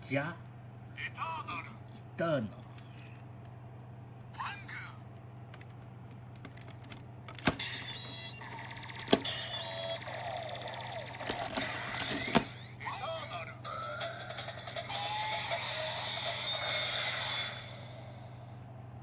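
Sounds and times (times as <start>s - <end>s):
toy electronic sound effects: 7.4s - 18.2s.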